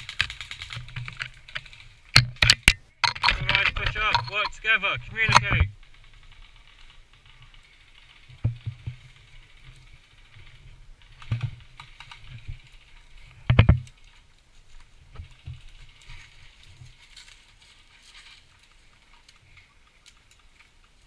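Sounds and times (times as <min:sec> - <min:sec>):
sharp clicks and knocks: 0:00.0 - 0:06.4, 0:13.4 - 0:14.1.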